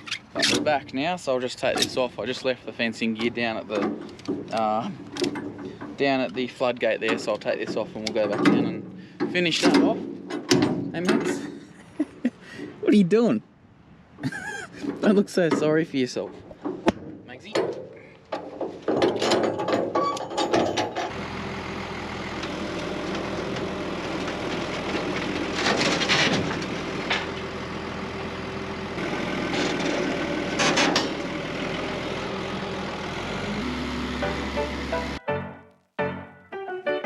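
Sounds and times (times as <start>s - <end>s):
knocks and clunks: 0.0s - 11.8s, 14.7s - 21.2s, 22.4s - 27.5s, 29.0s - 31.4s
vehicle engine running: 21.1s - 35.2s.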